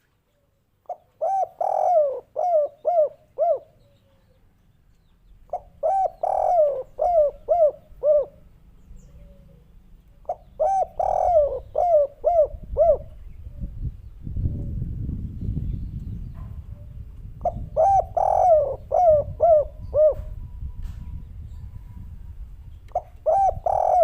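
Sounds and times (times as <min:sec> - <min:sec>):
dove cooing: 0:00.8 - 0:04.3, 0:05.5 - 0:13.8, 0:16.7 - 0:20.4, 0:22.9 - 0:24.0.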